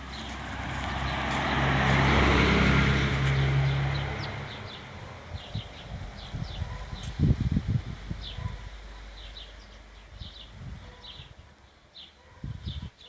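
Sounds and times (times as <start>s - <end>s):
car driving past: 0.0s - 7.0s
birds chirping: 0.0s - 13.0s.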